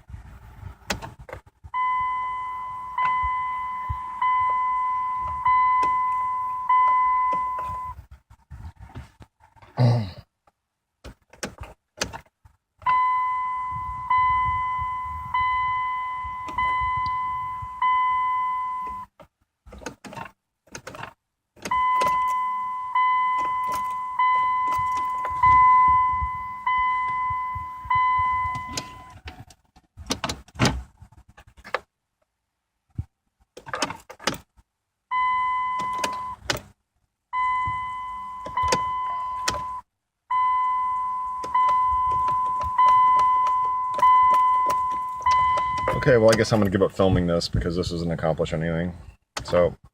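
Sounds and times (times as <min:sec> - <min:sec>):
dashboard warning chime dinging: 0:01.7 - 0:08.0, 0:12.8 - 0:19.2, 0:21.6 - 0:29.4, 0:35.1 - 0:36.7, 0:37.3 - 0:46.8
ignition key clicks: 0:05.2 - 0:07.9, 0:16.3 - 0:18.0, 0:19.8 - 0:29.5, 0:33.6 - 0:34.5, 0:35.8 - 0:36.7, 0:37.6 - 0:39.8, 0:41.2 - 0:46.8.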